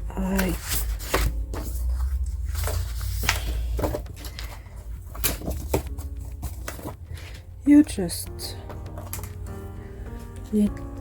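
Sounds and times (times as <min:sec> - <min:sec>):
paper and plastic rustling: 0:00.1 - 0:07.5, 0:08.7 - 0:09.5.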